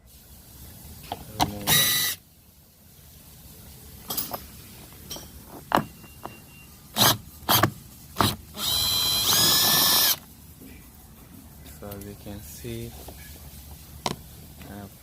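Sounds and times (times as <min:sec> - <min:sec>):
power drill running: 0:01.6 - 0:02.2, 0:08.2 - 0:10.2.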